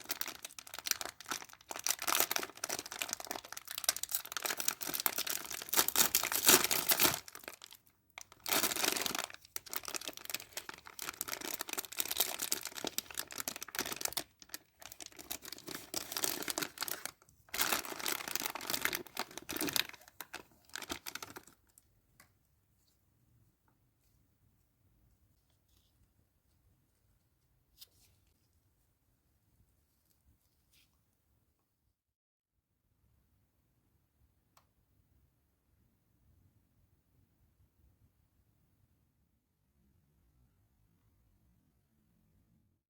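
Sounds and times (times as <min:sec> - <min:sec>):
packaging crinkling and tearing: 0:00.0 - 0:21.8.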